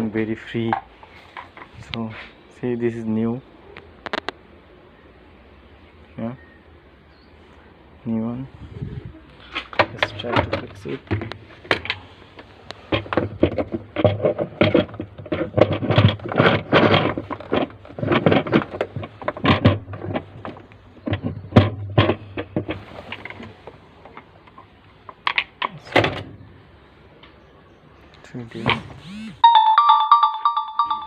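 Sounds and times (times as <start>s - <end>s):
plastic knocks and clatter: 9.6s - 12.0s, 12.7s - 26.3s.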